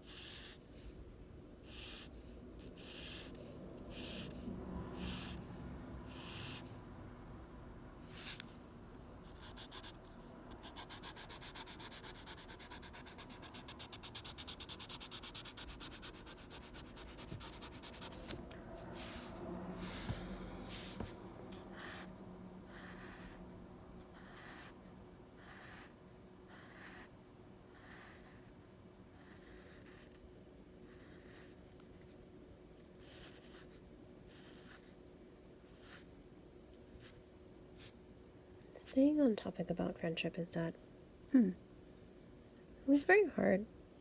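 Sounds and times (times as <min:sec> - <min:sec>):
pencil scratching on paper: 0:00.0 - 0:00.6, 0:01.7 - 0:04.4, 0:05.0 - 0:05.4, 0:06.1 - 0:06.6, 0:09.3 - 0:22.1, 0:22.7 - 0:23.4, 0:24.1 - 0:24.8, 0:25.4 - 0:25.9, 0:26.5 - 0:27.1, 0:27.8 - 0:28.5, 0:33.0 - 0:35.0.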